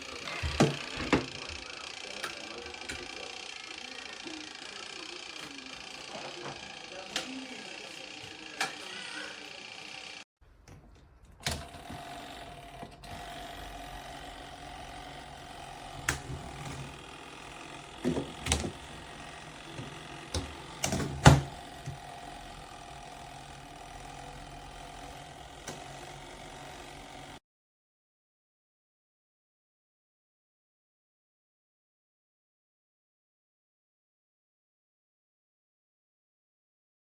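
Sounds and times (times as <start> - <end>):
washing machine motor hum: 0.0 - 27.4.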